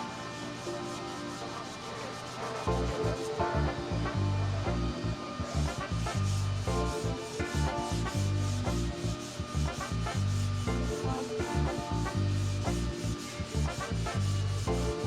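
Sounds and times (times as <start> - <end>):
background music with pulsing bass: 0.0 - 15.0
hand sanding rasping strokes: 5.5 - 15.0.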